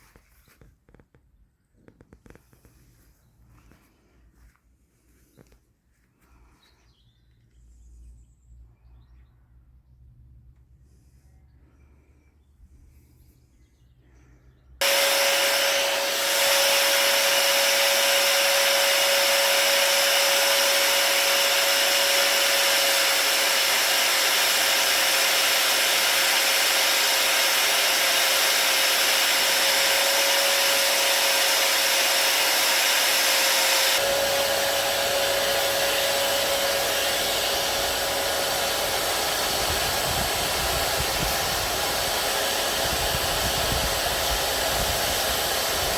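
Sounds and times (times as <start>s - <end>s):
loud hiss: 14.8s - 45.9s
power tool motor whine: 14.8s - 45.9s.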